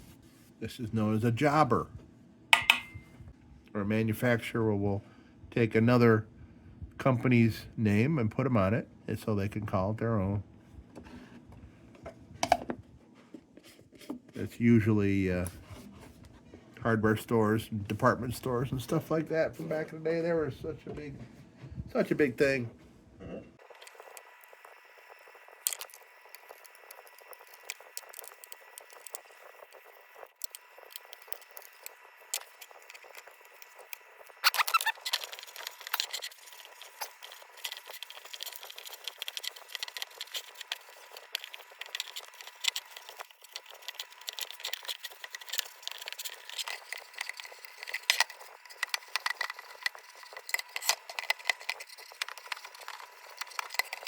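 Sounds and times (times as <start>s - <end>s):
small metal parts clicking and rattling: 30.4s - 54.0s.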